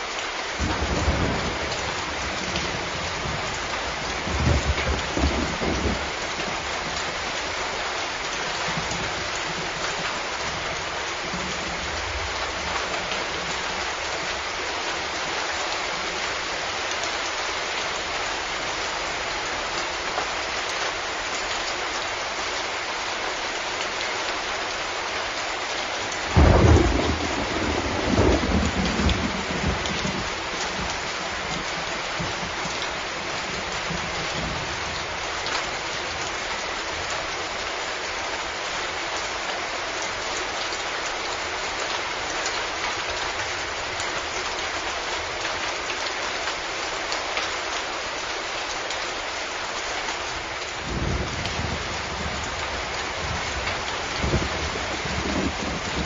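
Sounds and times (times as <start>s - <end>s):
heavy rain falling: 0.0s - 56.0s
thunder rumbling: 0.6s - 6.7s, 26.3s - 31.0s, 50.8s - 56.0s.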